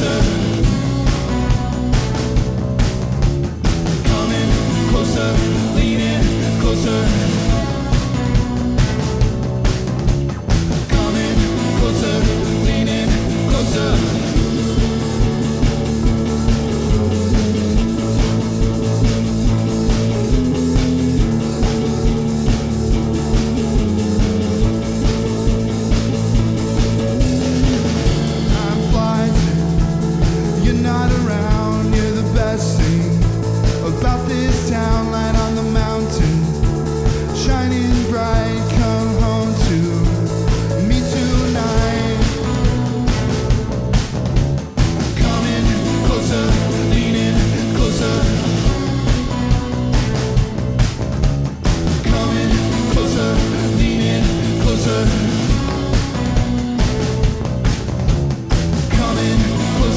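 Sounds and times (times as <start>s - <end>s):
rock band playing: 0.0s - 59.9s.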